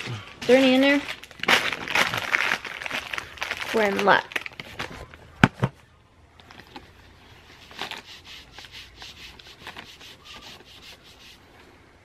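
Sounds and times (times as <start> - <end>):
wet wipe scrubbing skin: 7.5 - 11.4.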